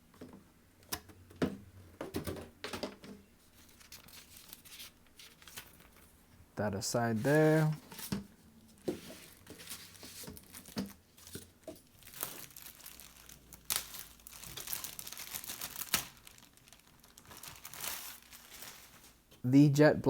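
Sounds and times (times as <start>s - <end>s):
packaging crinkling: 3.5s - 6.1s, 9.0s - 19.3s.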